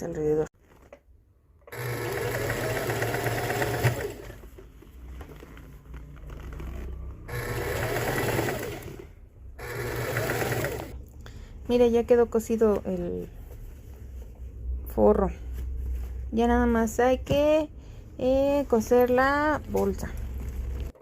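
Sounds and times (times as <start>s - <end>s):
sewing machine stitching: 1.6s - 4.6s, 6.1s - 11.0s.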